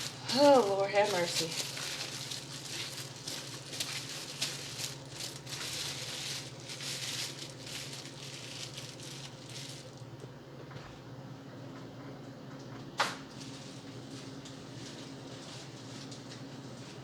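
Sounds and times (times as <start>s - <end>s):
plastic packaging crinkling: 0.0s - 10.2s.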